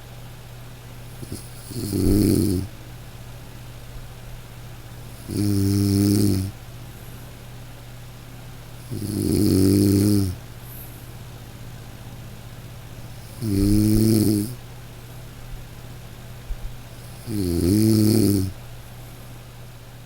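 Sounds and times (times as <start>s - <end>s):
steady low hum: 0.0s - 20.0s
person snoring: 1.2s - 2.7s, 5.1s - 6.6s, 8.8s - 10.4s, 13.2s - 14.6s, 17.0s - 18.5s.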